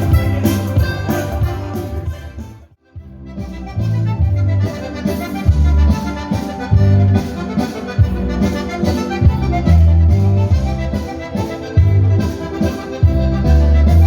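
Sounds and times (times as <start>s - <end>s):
accordion dance music: 0.0s - 14.0s
bass line: 0.0s - 14.0s.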